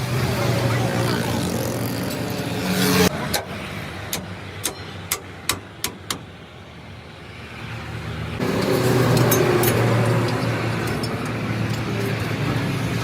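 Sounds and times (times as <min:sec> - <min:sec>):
sharp metallic taps: 0:04.1 - 0:06.3.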